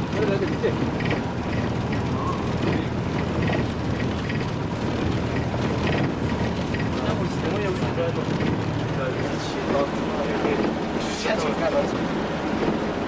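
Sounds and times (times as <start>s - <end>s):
bus engine rumbling: 0.0s - 13.0s
road noise: 0.0s - 13.0s.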